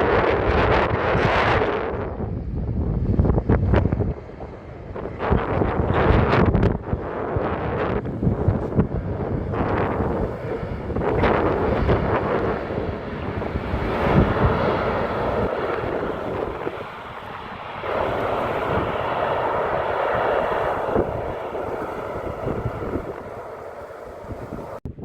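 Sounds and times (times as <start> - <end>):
jet engine noise: 0.0 - 25.0
wind buffeting microphone: 0.0 - 25.0.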